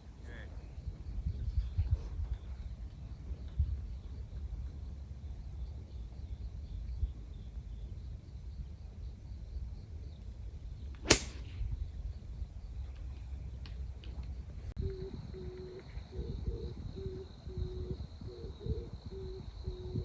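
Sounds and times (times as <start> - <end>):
wind on microphone: 0.0 - 4.8, 11.0 - 20.0
golf club striking ball: 11.0 - 11.5.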